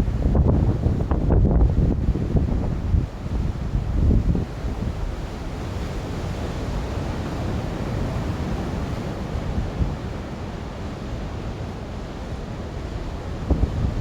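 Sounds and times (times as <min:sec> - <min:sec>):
wind buffeting microphone: 0:00.0 - 0:05.5, 0:13.0 - 0:14.0
rough sea surf washing in: 0:00.0 - 0:14.0.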